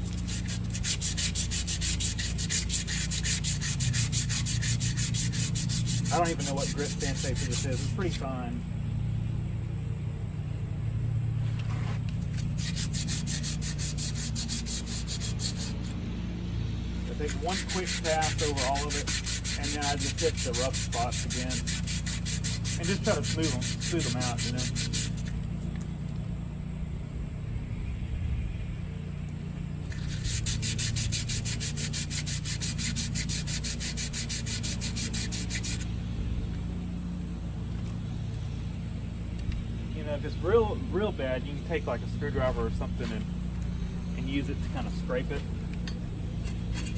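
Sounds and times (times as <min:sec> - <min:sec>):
sandpaper rubbing on metal rim: 0:00.0 - 0:08.3, 0:11.4 - 0:16.0, 0:17.0 - 0:25.4, 0:29.8 - 0:35.9, 0:44.4 - 0:45.5
steady low hum: 0:00.0 - 0:46.9.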